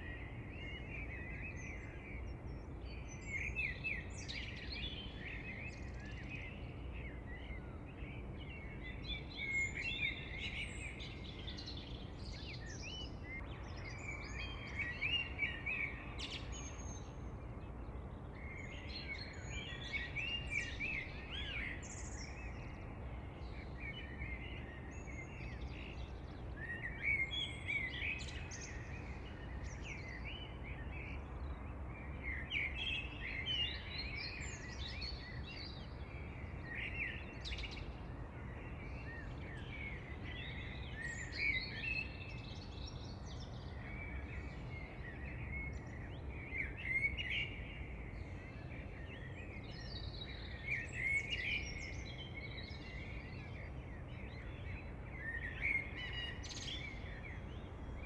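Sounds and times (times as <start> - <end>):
songbirds singing: 0.0 - 58.0.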